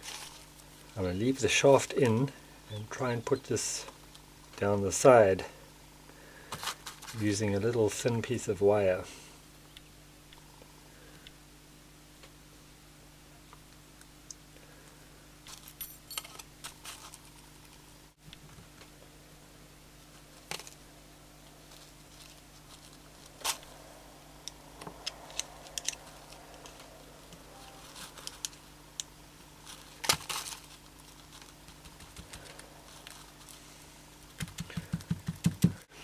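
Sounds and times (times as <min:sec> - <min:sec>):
small scraping handling noises: 0:06.4 - 0:08.2, 0:15.4 - 0:17.8, 0:21.4 - 0:23.8
quick taps: 0:34.4 - 0:35.8.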